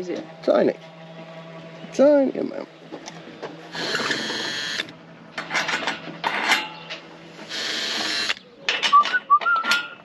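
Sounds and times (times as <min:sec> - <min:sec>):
small power tool whirring: 0:03.7 - 0:05.0, 0:07.4 - 0:08.4
ratchet clicks: 0:03.8 - 0:04.9, 0:07.5 - 0:08.4.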